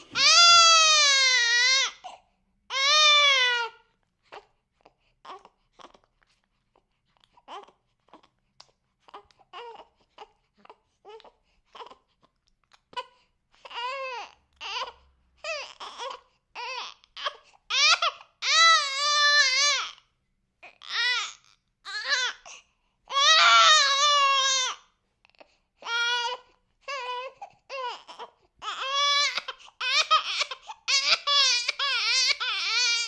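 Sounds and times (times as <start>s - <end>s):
baby whimpering and crying: 0.0s - 4.5s, 5.2s - 6.0s, 7.4s - 8.3s, 9.0s - 12.1s, 12.9s - 20.0s, 20.6s - 33.0s.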